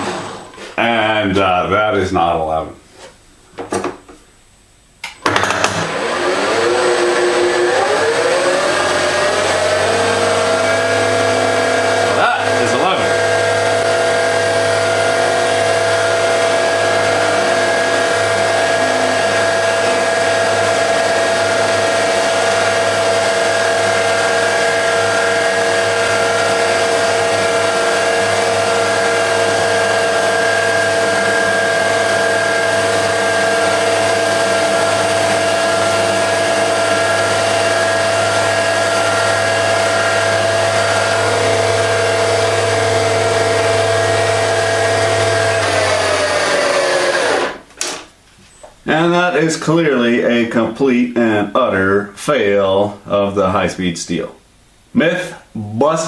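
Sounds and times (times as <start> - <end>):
milling machine running: 0.0 - 0.6, 5.2 - 47.6.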